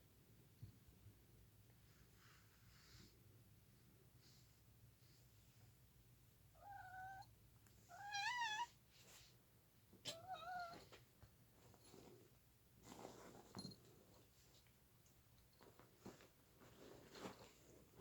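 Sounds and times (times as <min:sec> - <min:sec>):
cat meowing: 0:06.6 - 0:07.3, 0:07.9 - 0:08.8, 0:10.0 - 0:10.8.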